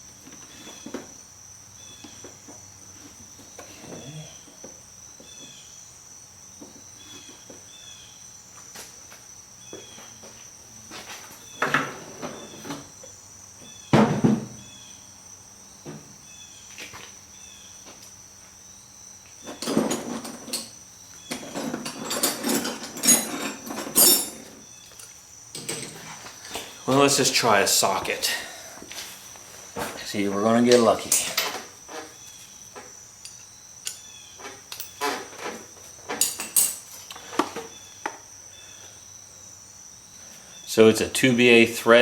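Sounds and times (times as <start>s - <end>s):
cricket chirping: 0.0s - 42.0s
metal hand tools clinking: 21.5s - 26.0s, 30.7s - 31.6s, 33.2s - 34.1s, 34.7s - 35.4s, 36.1s - 36.9s.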